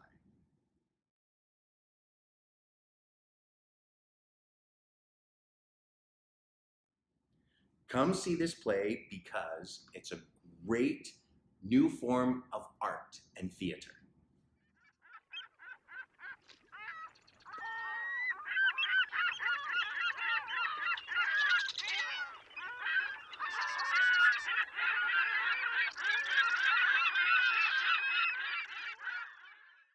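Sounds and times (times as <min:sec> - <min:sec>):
waterbirds honking: 0:14.8 - 0:29.9.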